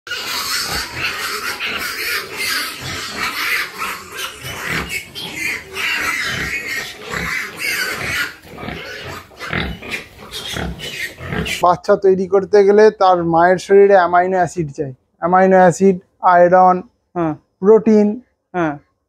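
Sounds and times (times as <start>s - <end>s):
pigs squealing: 0.1s - 11.8s.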